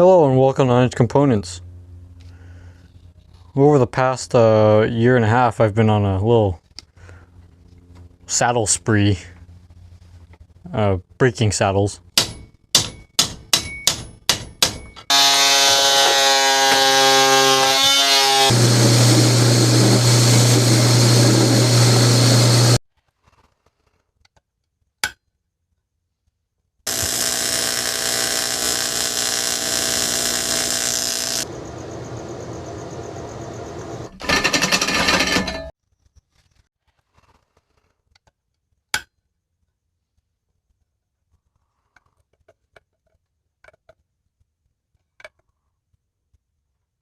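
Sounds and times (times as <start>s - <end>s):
power tool motor whining: 15.1s - 22.8s, 26.9s - 31.8s
low hum: 18.5s - 22.8s, 26.9s - 35.6s
power tool clicks: 26.9s - 31.5s.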